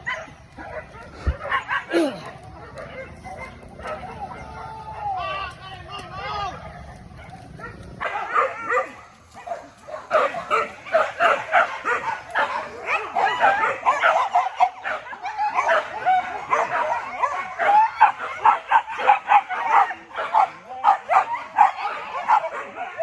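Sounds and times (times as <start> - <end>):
dogs barking and yipping: 0.0 - 5.6, 6.2 - 23.0.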